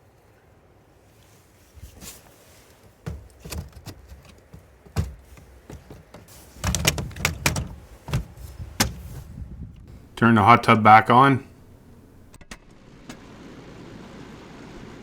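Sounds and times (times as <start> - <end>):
knocks and clicks of parts handled: 3.1 - 9.3.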